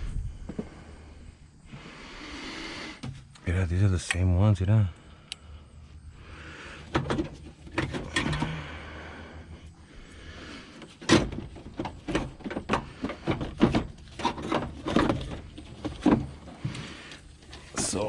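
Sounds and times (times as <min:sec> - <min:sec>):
car parts and tools knocking: 0:11.0 - 0:16.5.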